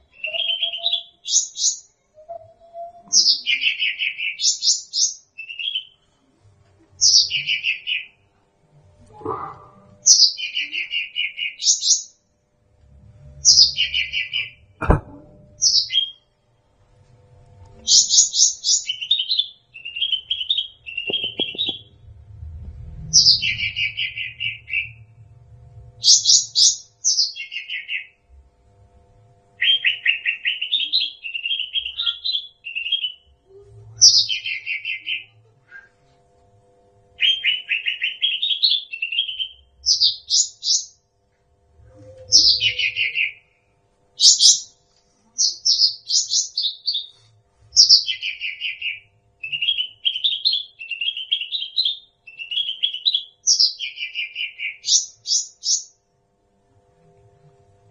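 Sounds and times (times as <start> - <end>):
songbird trilling: 17.9 - 21.9.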